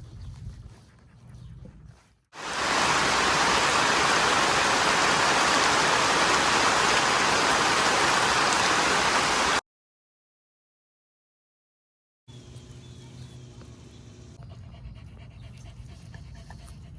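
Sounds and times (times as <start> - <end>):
heavy rain hissing: 2.4 - 9.6.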